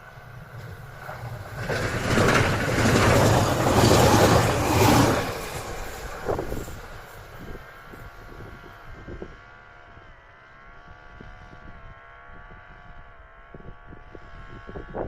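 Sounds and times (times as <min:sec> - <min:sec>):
train passing at speed: 0:00.0 - 0:09.1.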